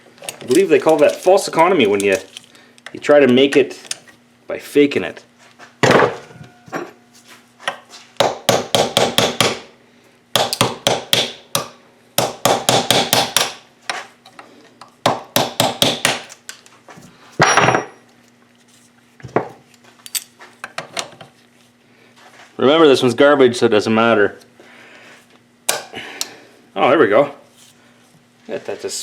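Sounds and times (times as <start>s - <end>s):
hammer tapping on metal punch: 8.2s - 9.6s, 10.4s - 13.6s.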